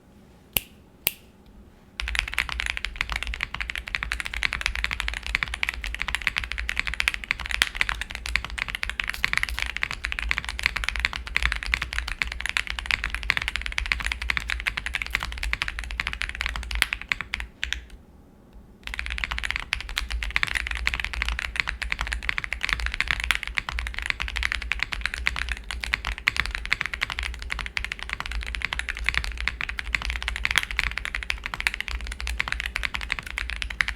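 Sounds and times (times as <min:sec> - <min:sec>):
mechanical keyboard typing: 0:02.0 - 0:18.0, 0:18.8 - 0:33.9.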